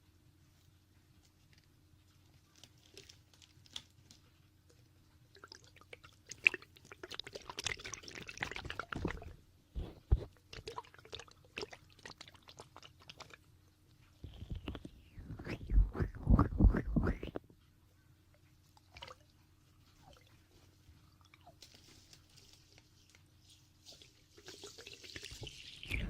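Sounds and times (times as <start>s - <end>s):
fingertips rubbing microphone: 14.2s - 17.4s.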